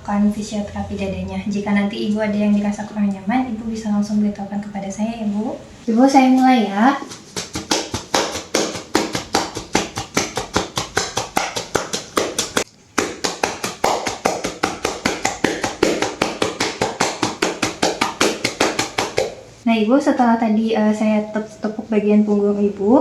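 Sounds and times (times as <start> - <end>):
hands patting a back: 7.0 - 19.5.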